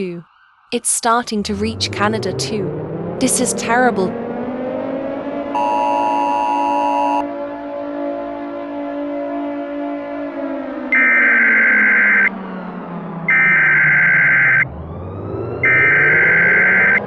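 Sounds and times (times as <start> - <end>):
air-raid siren winding: 5.5 - 7.2, 10.9 - 12.3, 13.3 - 14.7, 15.6 - 17.0.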